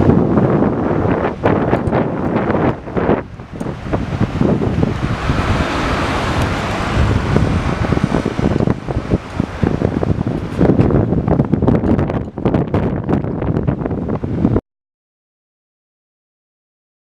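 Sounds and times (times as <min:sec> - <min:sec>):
wind buffeting microphone: 0:00.0 - 0:14.6
car tyres hissing past: 0:03.8 - 0:09.9.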